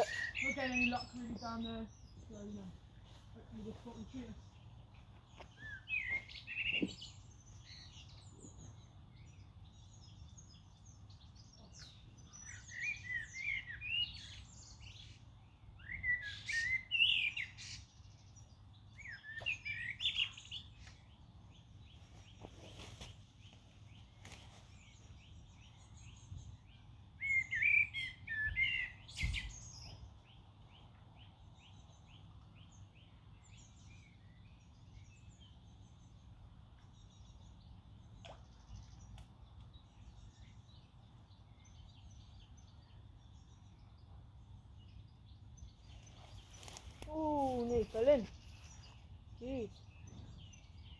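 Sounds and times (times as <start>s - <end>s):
songbird warbling: 0.0s - 2.1s.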